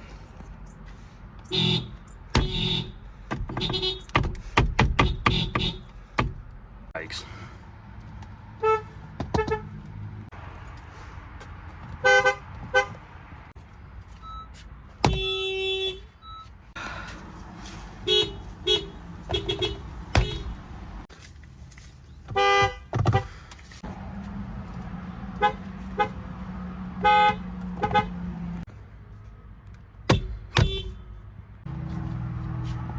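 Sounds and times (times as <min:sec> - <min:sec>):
car horns tooting: 0:01.4 - 0:04.2, 0:04.9 - 0:06.0, 0:08.6 - 0:09.8, 0:12.0 - 0:13.0, 0:15.0 - 0:16.4, 0:18.0 - 0:20.6, 0:22.3 - 0:23.4, 0:25.3 - 0:26.2, 0:27.0 - 0:28.2, 0:30.1 - 0:31.2.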